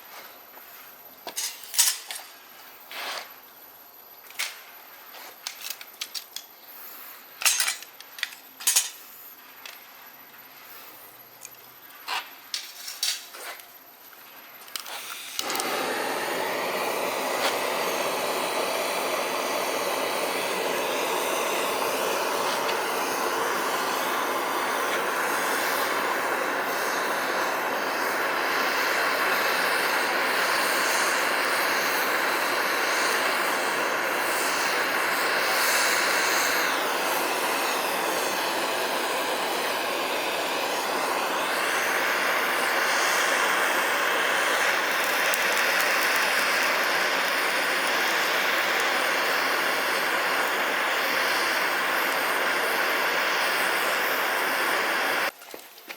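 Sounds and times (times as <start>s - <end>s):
metallic clicks and clinks: 7.4s - 9.8s
loud hissing rush: 15.1s - 55.4s.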